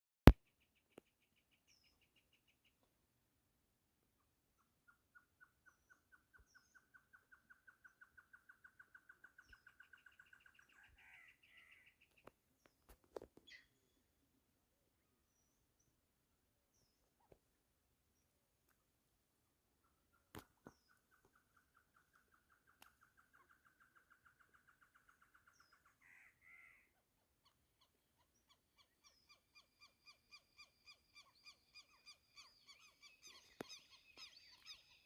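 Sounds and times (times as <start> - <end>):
bird hooting song: 4.6 - 12.0, 27.4 - 35.0.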